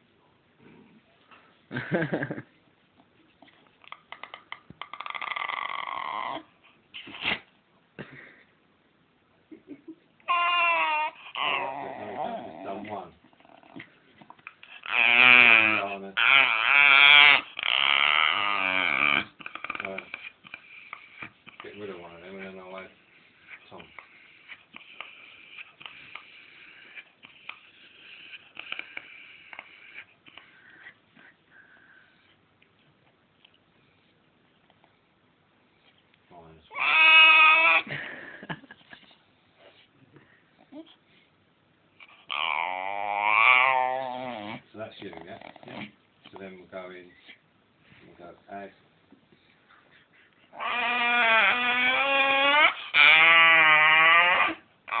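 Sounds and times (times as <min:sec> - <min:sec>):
small dog grunting and whining: 0:03.4 - 0:07.5, 0:10.2 - 0:31.0, 0:36.6 - 0:38.1, 0:42.0 - 0:46.4, 0:50.5 - 0:55.0.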